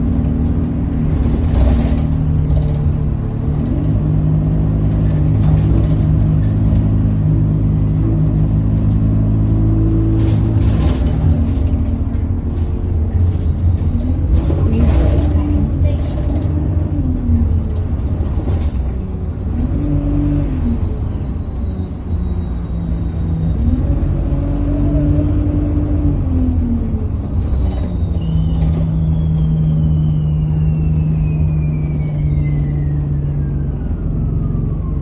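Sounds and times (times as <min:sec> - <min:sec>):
diesel engine drone: 0:00.0 - 0:35.0
low road rumble: 0:00.0 - 0:35.0
turbocharger whistle: 0:04.1 - 0:11.2, 0:18.9 - 0:35.0.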